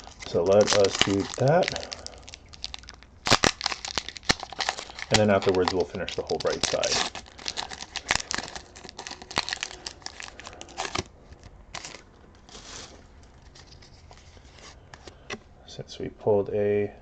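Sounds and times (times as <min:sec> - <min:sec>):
foil wrapper crinkling and tearing: 0:00.0 - 0:15.2
soft rustles: 0:10.8 - 0:15.5.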